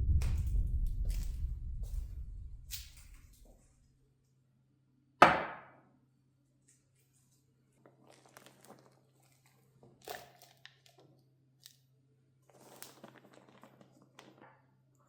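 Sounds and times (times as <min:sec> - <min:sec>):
faint low hum: 0:00.0 - 0:04.1
sharp thunk: 0:05.2 - 0:05.7.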